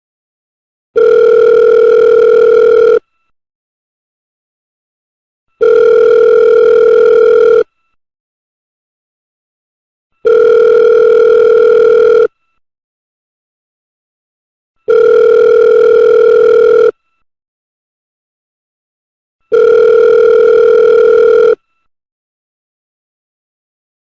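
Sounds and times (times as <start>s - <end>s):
telephone ringback tone: 1.0s - 3.1s, 5.6s - 7.8s, 10.2s - 12.4s, 14.9s - 17.0s, 19.5s - 21.7s.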